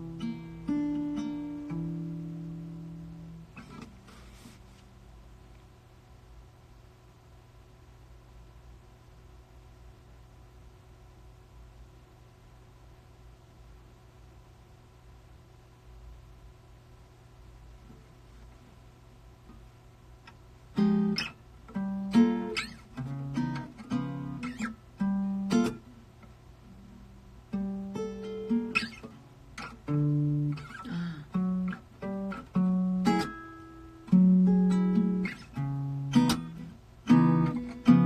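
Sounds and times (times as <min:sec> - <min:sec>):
acoustic guitar playing: 0:00.0 - 0:04.8, 0:20.7 - 0:38.0
low steady hum: 0:00.0 - 0:38.0.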